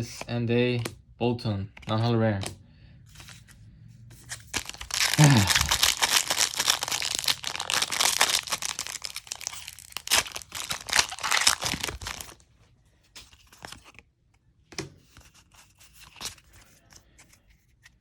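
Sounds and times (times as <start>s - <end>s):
cards rustling: 1.7s - 12.4s, 13.1s - 14.0s
foil wrapper crinkling and tearing: 4.5s - 12.4s.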